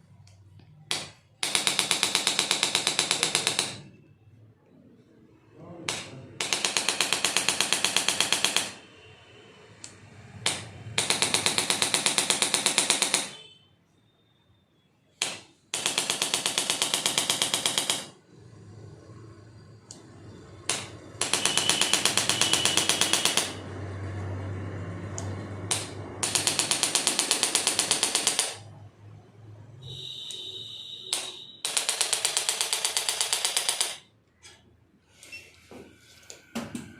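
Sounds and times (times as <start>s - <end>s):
rapid mechanical tapping: 19.8s - 23.8s.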